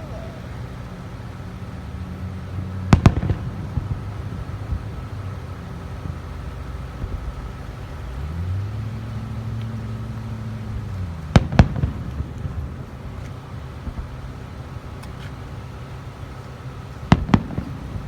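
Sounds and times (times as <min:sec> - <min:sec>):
fireworks crackling pops: 0:02.4 - 0:08.2, 0:09.1 - 0:18.0
fireworks sharp bangs: 0:02.4 - 0:08.2, 0:10.7 - 0:18.0.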